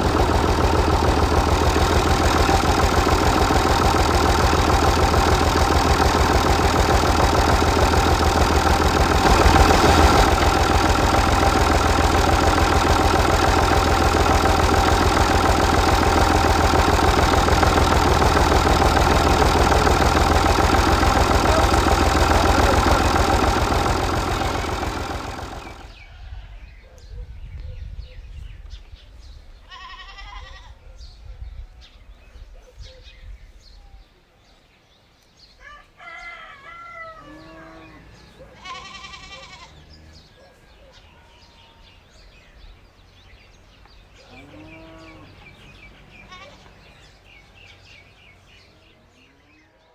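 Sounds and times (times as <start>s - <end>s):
small engine running: 0.0s - 26.0s, 37.2s - 40.4s, 43.0s - 49.0s
goat bleating: 38.6s - 39.8s, 46.2s - 46.8s.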